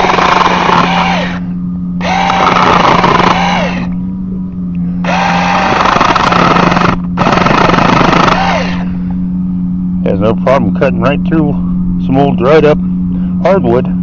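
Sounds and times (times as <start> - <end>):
mini chainsaw cutting wood: 0.0 - 1.4, 2.0 - 3.9, 5.0 - 8.9
steady low hum: 0.0 - 14.0.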